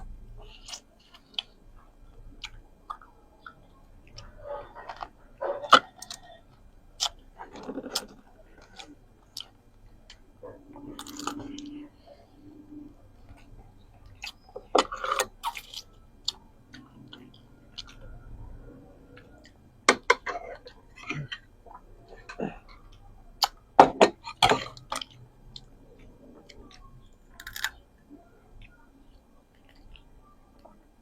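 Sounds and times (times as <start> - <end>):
chewing and mouth clicks: 13.3 - 19.6, 24.2 - 30.8.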